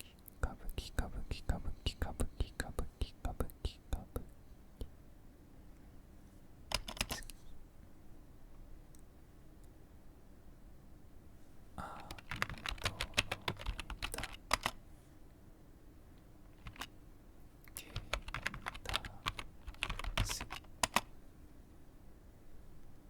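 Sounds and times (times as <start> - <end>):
computer keyboard typing: 6.7 - 7.3, 12.0 - 14.8, 16.6 - 16.9, 17.8 - 21.1.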